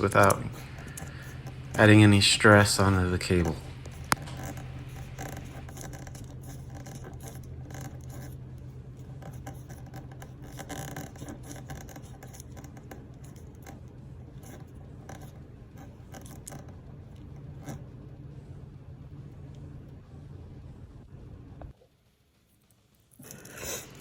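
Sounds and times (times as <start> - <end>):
steady low hum: 0.0 - 24.0
small plastic clicks and scrapes: 3.3 - 17.8.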